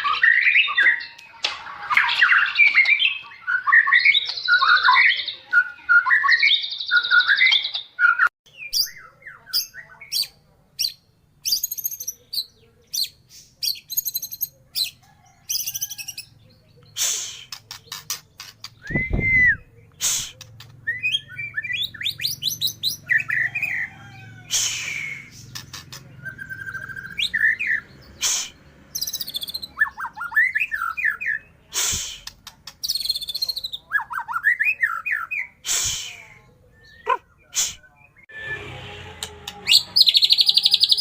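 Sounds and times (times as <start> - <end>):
bird singing whistled phrases: 18.8 - 19.8.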